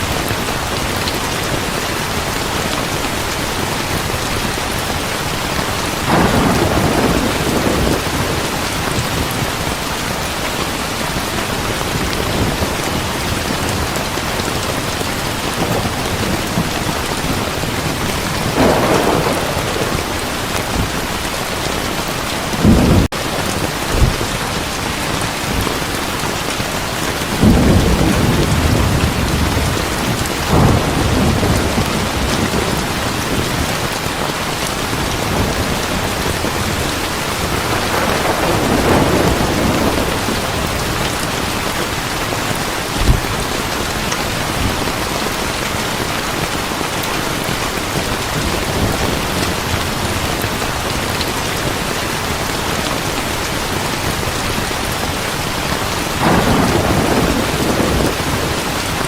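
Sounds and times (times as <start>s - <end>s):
heavy rain falling: 0.0s - 59.0s
thunder rumbling: 4.0s - 53.5s, 54.9s - 59.0s
loud thunder clap: 6.0s - 9.8s, 15.3s - 24.6s, 27.2s - 34.1s, 34.9s - 41.4s, 56.2s - 59.0s.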